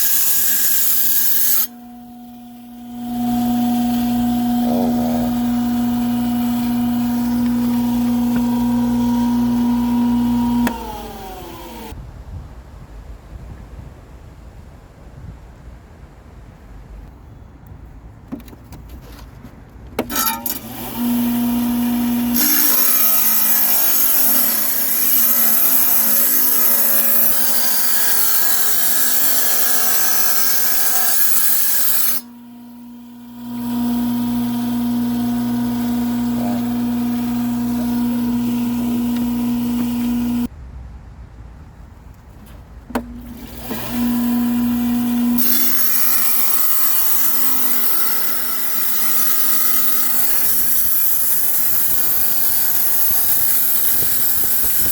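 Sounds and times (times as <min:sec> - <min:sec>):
blade grinding through rock: 0:00.0 - 0:11.9, 0:33.4 - 0:40.5
tile saw motor hum: 0:00.0 - 0:12.0, 0:20.0 - 0:40.5, 0:43.0 - 0:54.9.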